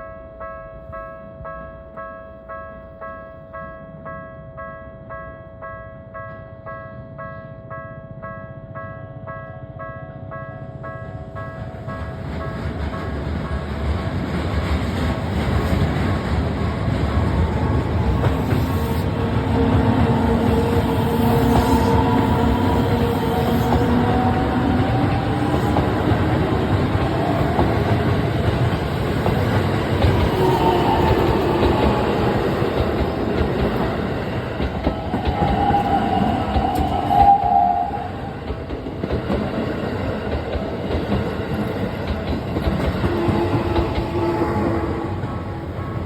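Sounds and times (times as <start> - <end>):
train wheels rumbling on rail: 10.6 - 46.0
train motor whine: 17.2 - 34.0, 34.6 - 38.6.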